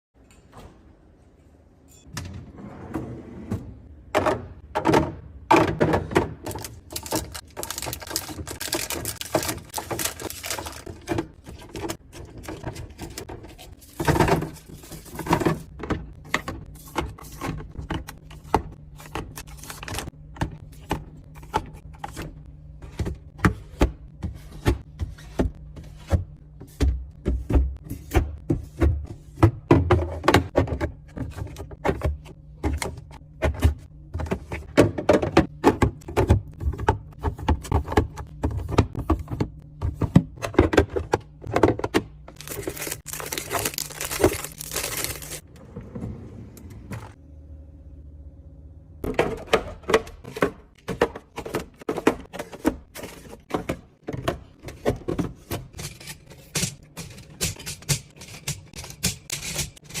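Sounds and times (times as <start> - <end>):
containers clicking and thunking: 4.1 - 25.6, 27.1 - 45.4, 49.0 - 60.0.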